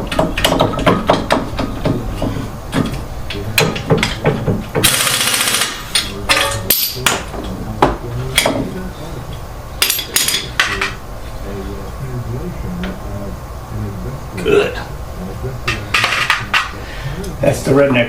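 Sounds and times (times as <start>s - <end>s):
hammer striking metal: 2.8s - 8.6s.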